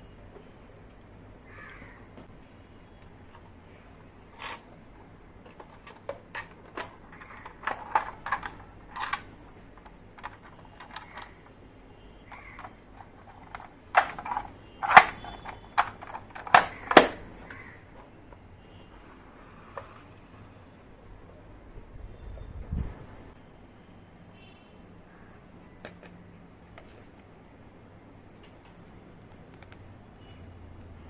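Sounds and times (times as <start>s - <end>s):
plastic toy pieces clicking: 5.5s - 9.2s, 9.8s - 11.5s, 12.3s - 17.2s.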